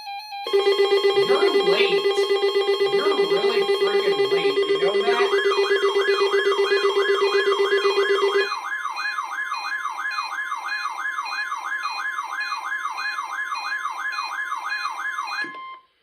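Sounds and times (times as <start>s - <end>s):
warbling alert siren: 0.0s - 15.8s
steady alert tone: 0.5s - 8.5s.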